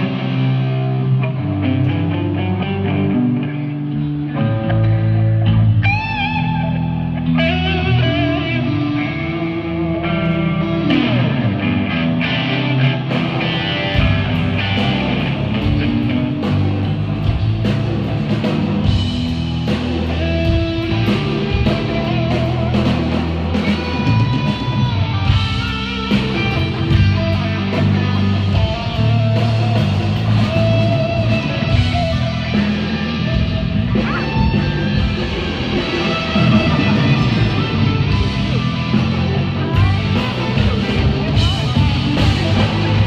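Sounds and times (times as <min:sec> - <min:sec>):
electric guitar: 0:00.0 - 0:43.0
drums and cymbals: 0:12.4 - 0:43.0.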